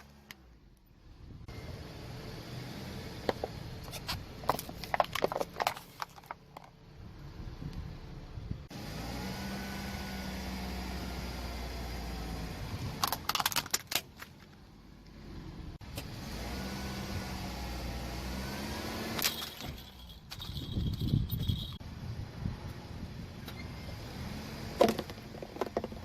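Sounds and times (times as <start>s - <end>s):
plastic toys cracking under tyre: 4.4s - 6.8s, 13.0s - 14.6s.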